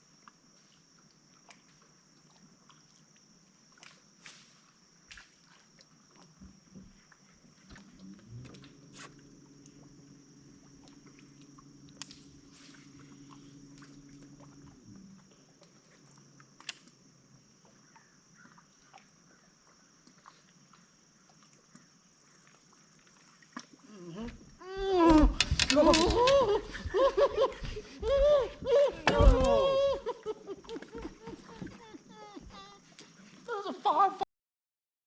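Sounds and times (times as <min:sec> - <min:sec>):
faint high whine: 0:07.4 - 0:17.4
electric trolling motor humming: 0:07.8 - 0:15.3.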